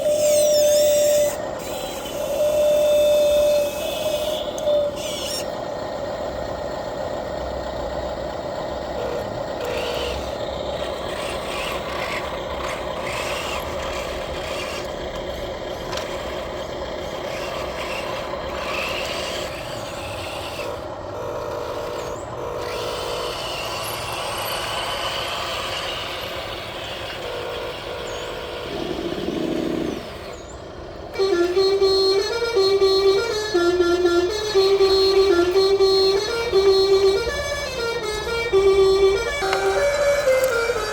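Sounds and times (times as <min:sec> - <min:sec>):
truck engine running: 0:00.0 - 0:40.9
horn blast: 0:31.2 - 0:40.9
music: 0:31.2 - 0:40.9.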